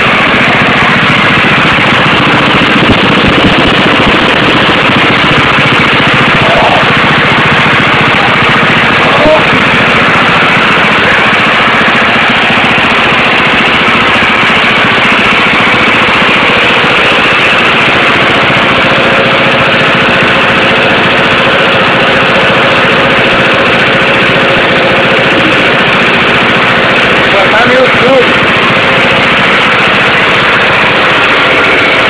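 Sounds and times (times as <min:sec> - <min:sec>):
diesel engine clattering: 0:00.0 - 0:32.0.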